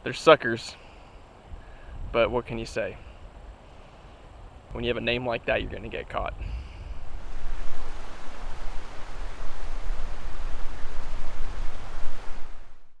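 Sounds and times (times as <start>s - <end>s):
fast-flowing river water: 7.0s - 12.8s.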